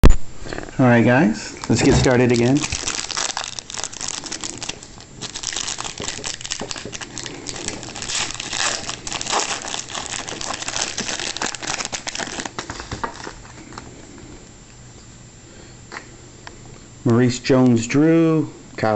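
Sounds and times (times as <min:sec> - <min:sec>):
foil wrapper crinkling: 0:01.6 - 0:13.7.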